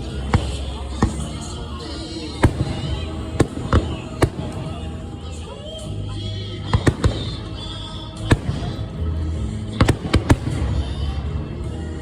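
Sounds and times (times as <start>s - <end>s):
fireworks bangs: 2.4s - 5.0s, 6.7s - 7.6s, 8.2s - 9.1s, 9.7s - 11.0s.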